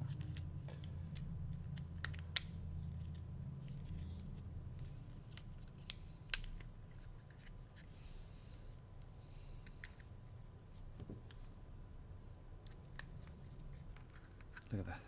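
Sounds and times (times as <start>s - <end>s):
low steady hum: 0.0s - 15.0s
plastic parts clicking and snapping: 0.1s - 3.2s.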